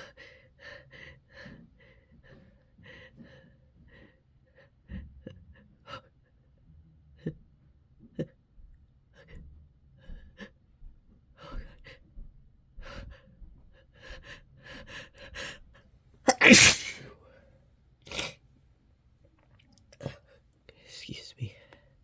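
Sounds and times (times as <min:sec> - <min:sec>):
loud sneeze: 0:16.3 - 0:17.1, 0:18.1 - 0:18.4.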